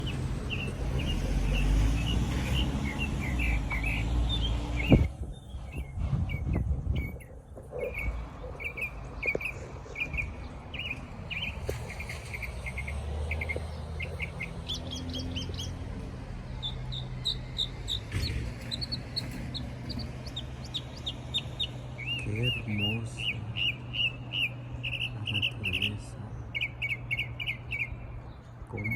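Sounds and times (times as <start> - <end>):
steady low rumble: 0.0 - 26.6
songbird chirping: 0.0 - 28.9.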